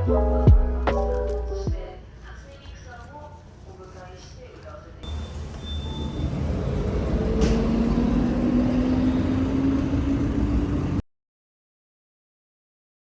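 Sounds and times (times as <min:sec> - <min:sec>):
vehicle rumble with rising whine: 0:05.0 - 0:11.0.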